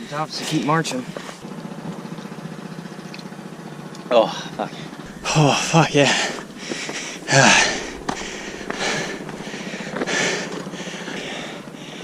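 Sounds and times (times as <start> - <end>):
person breathing hard and puffing: 5.0 - 12.0
person groaning: 5.1 - 6.4, 7.2 - 9.2.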